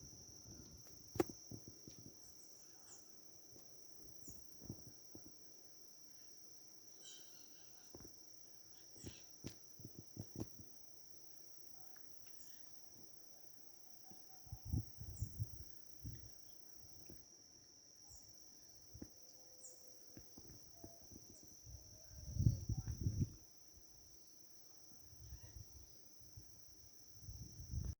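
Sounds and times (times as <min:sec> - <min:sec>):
insects trilling: 0:00.0 - 0:27.9
bird chirps: 0:07.0 - 0:08.0.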